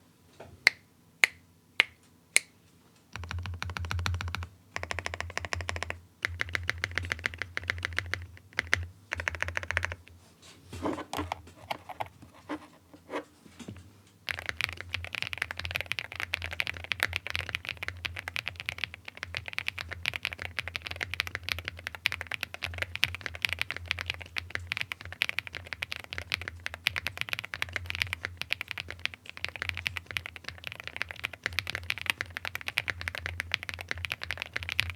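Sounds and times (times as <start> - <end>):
mechanical keyboard typing: 3.2 - 10.0, 10.9 - 12.7, 14.3 - 34.9.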